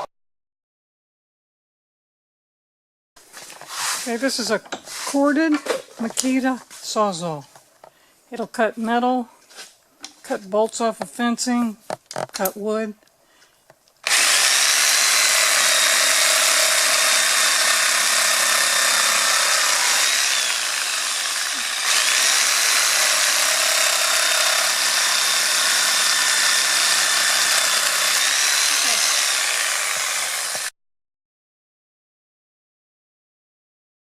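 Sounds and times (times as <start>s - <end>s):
reciprocating saw motor whine: 14.0s - 30.7s.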